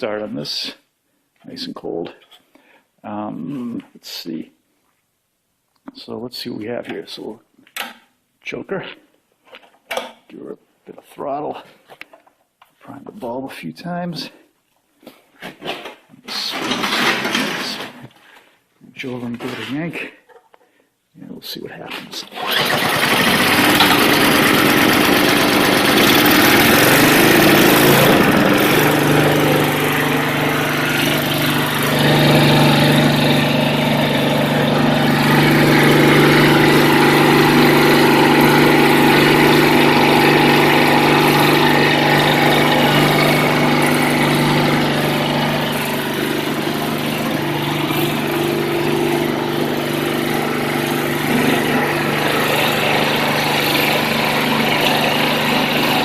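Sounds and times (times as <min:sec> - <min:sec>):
snowblower engine running: 0:16.4 - 0:17.8, 0:22.4 - 0:56.0.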